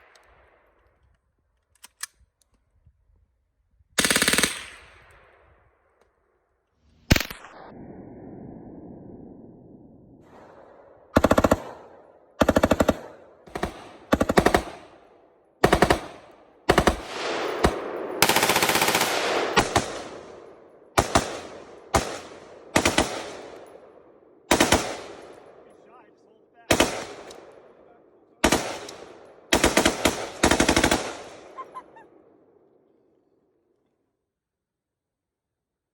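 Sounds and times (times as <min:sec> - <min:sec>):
rifle gunfire bursts: 0:04.0 - 0:04.8, 0:10.3 - 0:23.9, 0:24.5 - 0:25.7, 0:26.7 - 0:27.8, 0:28.4 - 0:31.8.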